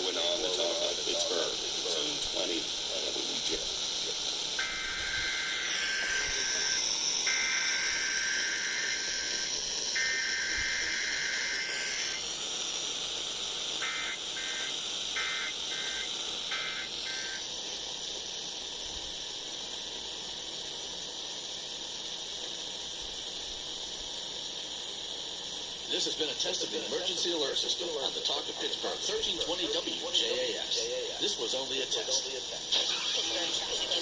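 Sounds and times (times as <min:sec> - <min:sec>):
raspy data tone bursts: 0:00.0 - 0:17.9
radio hiss: 0:00.0 - 0:34.0.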